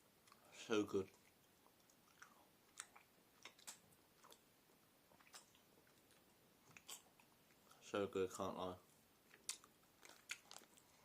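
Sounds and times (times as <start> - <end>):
chewing with mouth clicks: 0.2 - 4.5, 5.1 - 7.8, 9.3 - 10.9.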